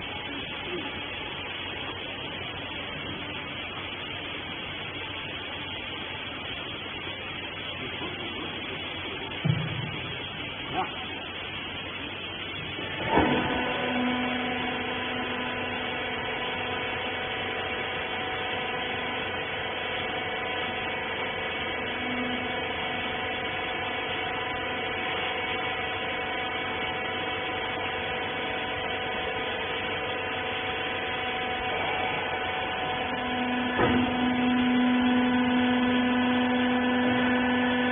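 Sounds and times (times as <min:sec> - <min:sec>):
baler motor and pump humming: 0:00.0 - 0:37.9.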